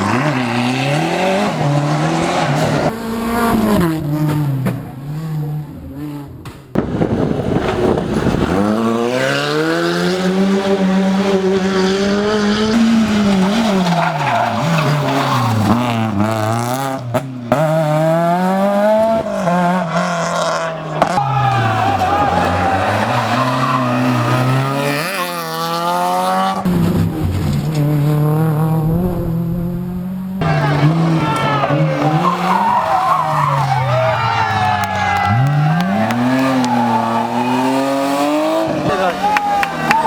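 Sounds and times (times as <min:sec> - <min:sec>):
rally car engines revving: 0:00.0 - 0:40.0
tyres squealing on road: 0:12.8 - 0:16.7, 0:19.0 - 0:26.7, 0:30.4 - 0:40.0.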